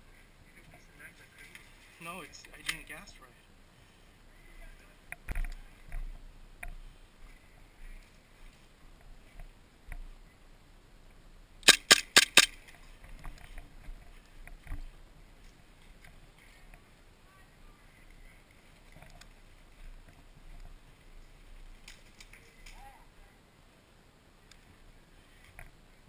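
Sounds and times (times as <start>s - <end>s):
airsoft gun shots: 11.6s - 12.6s.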